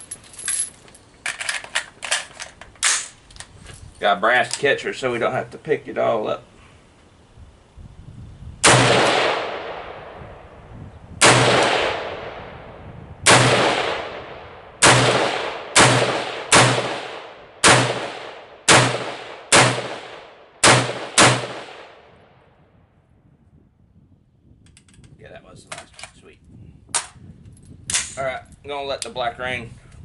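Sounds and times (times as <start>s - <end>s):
rifle shots with echo: 8.6s - 10.4s, 11.2s - 22.2s.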